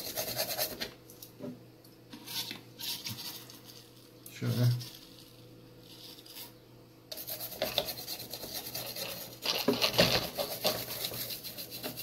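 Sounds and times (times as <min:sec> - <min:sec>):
toothbrush scrubbing circuit board: 0:00.0 - 0:00.8, 0:07.1 - 0:12.0.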